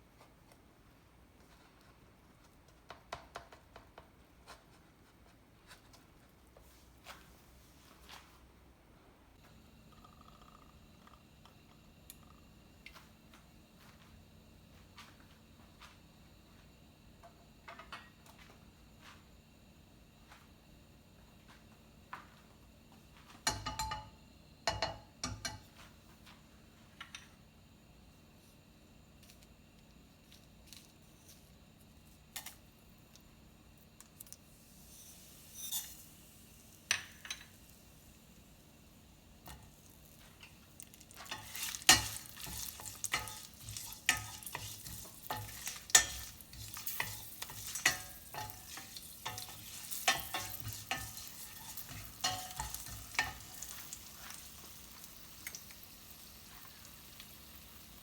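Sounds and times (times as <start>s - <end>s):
faint food sizzle: 21.2s - 58.0s
utensil scraping and knocking a pan: 41.2s - 53.9s.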